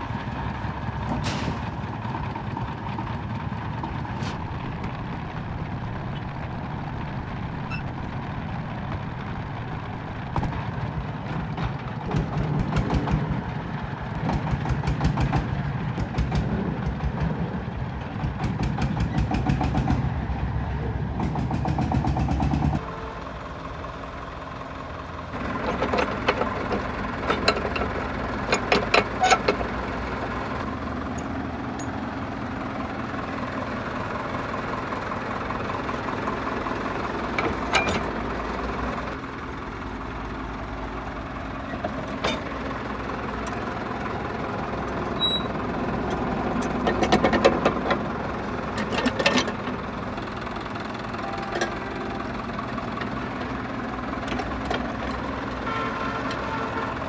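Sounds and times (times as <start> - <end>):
diesel engine running: 0.0 - 57.0
sharp knocks and clatters: 3.8 - 5.0, 10.3 - 13.5, 14.2 - 20.1, 21.2 - 22.8.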